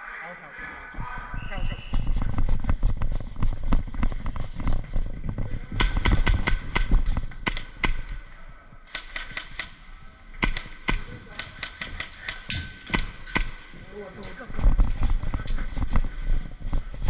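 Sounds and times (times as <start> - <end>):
airsoft gun shots: 5.8 - 8.2, 10.4 - 13.7.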